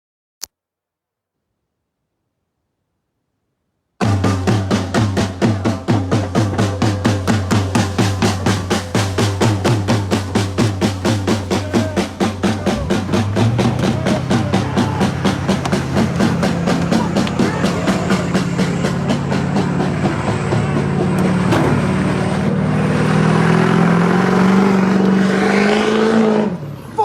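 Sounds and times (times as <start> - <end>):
fast drum beat: 4.0 - 21.2
steady bass line: 4.0 - 25.2.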